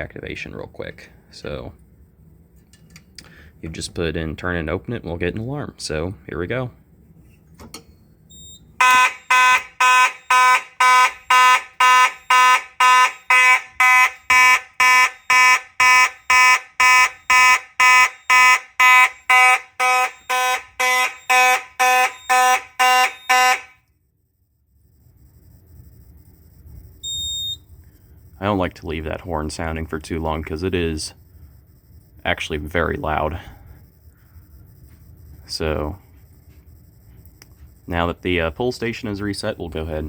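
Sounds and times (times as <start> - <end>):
fire alarm horn pulsing: 8.3 - 23.9, 27.0 - 27.6.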